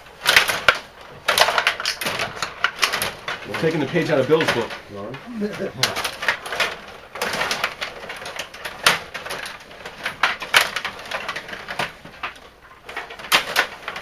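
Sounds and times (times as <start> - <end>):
sharp irregular clicks and knocks: 0.0 - 14.0.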